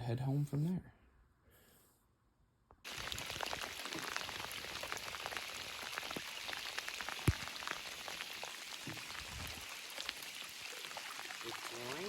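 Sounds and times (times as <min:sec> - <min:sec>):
steady rain falling: 0:02.9 - 0:12.0.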